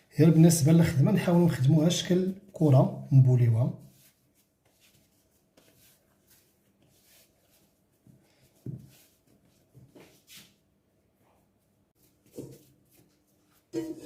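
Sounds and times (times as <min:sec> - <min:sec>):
hands rubbing dough: 0:03.5 - 0:13.8.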